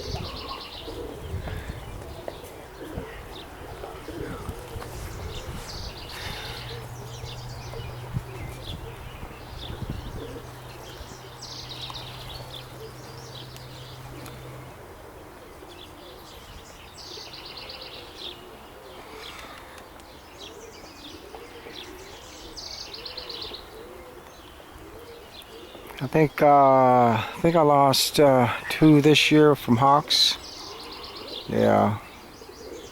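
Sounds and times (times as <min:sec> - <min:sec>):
songbird trilling: 0:00.0 - 0:02.0, 0:05.1 - 0:14.6
pigeons cooing: 0:00.0 - 0:32.9.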